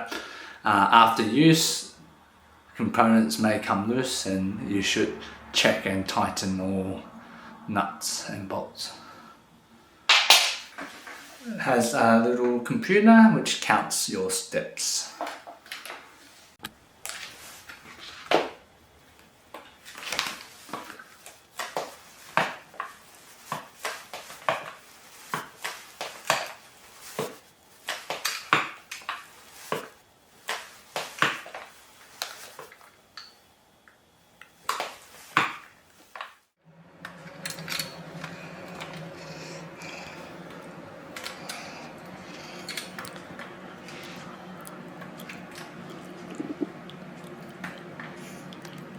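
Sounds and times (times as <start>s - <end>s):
steady low hum: 36.6s - 48.9s.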